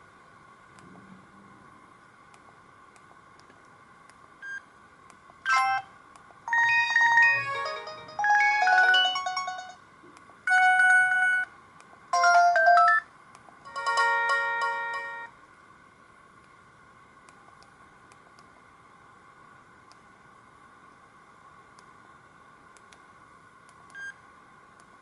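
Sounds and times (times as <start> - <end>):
mobile phone electronic jingles: 6.5 - 9.8.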